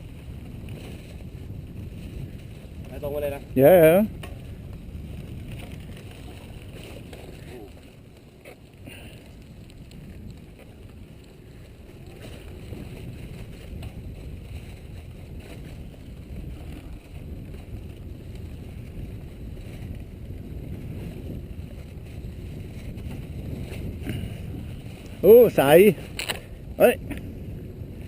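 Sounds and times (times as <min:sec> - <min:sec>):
bike tyres on dirt trail: 0:00.0 - 0:28.0
wind buffeting microphone: 0:00.0 - 0:28.0.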